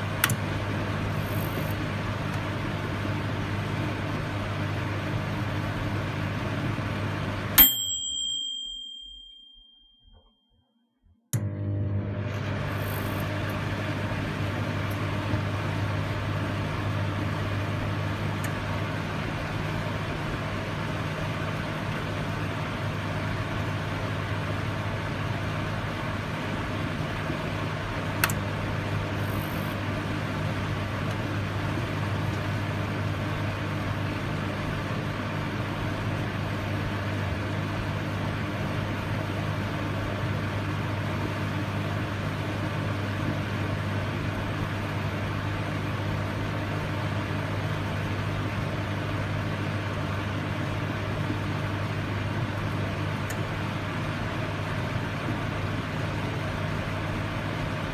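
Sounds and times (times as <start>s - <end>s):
microwave oven humming: 0.0s - 9.8s, 11.3s - 57.9s
microwave click: 0.2s - 0.5s, 11.4s - 13.7s, 28.1s - 28.5s.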